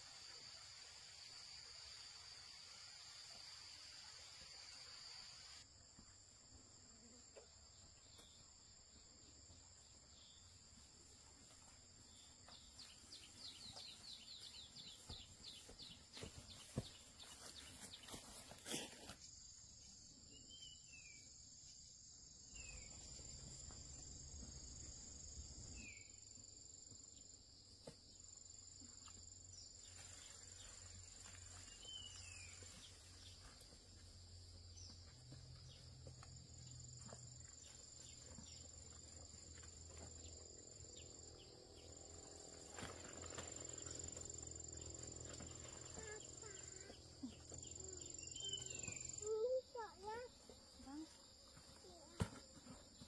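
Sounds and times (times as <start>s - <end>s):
insects chirring: 18.0s - 53.0s.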